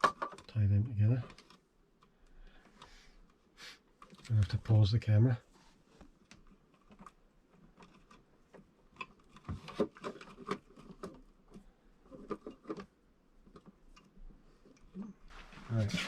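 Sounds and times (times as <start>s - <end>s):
hands handling cables and fittings: 5.8s - 16.0s.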